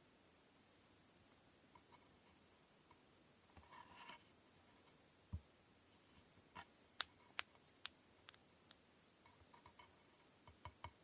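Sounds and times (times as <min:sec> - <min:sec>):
small objects clicking and tapping: 0:06.6 - 0:11.0.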